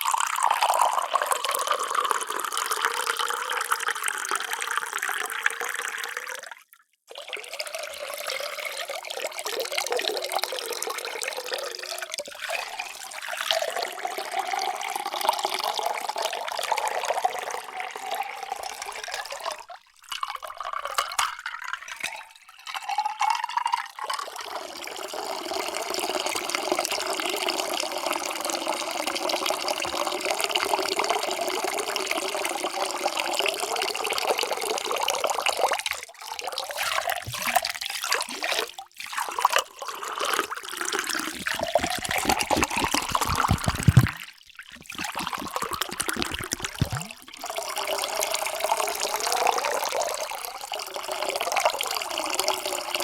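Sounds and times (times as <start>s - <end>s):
water pouring into a vessel: 0.0s - 53.0s.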